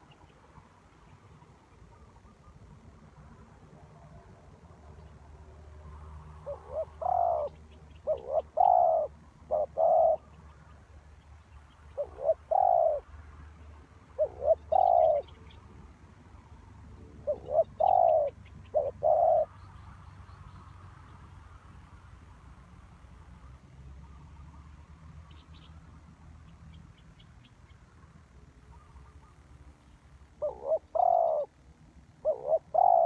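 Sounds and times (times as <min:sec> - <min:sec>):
dove cooing: 0:06.4 - 0:10.3, 0:12.0 - 0:13.0, 0:14.2 - 0:15.4, 0:17.2 - 0:19.5, 0:30.4 - 0:31.6, 0:32.2 - 0:33.0.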